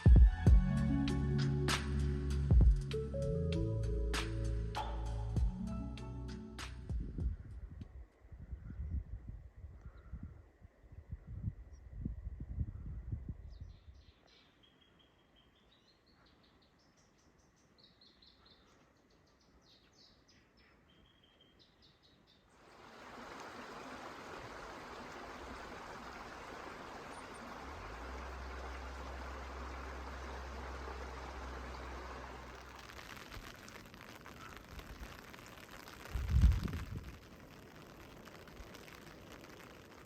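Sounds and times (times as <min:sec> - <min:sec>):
songbird chirping: 0:13.5 - 0:33.2
stream rushing: 0:22.6 - 0:40.0
low rumble: 0:27.4 - 0:32.8.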